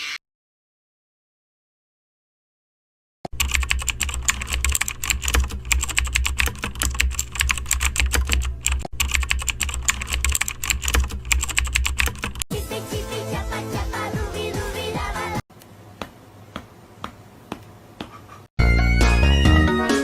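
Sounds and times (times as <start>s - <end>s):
typing on a keyboard: 3.3s - 12.4s
music: 12.5s - 15.4s, 18.6s - 20.0s.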